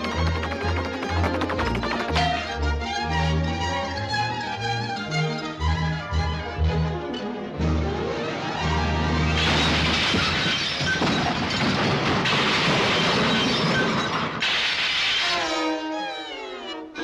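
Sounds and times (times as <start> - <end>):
orchestral music: 0.0 - 9.8
crashing shattering noise: 9.4 - 15.3.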